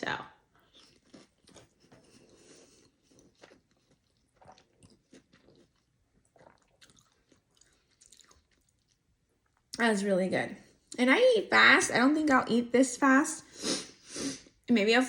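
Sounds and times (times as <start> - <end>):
person chewing: 0.5 - 9.7.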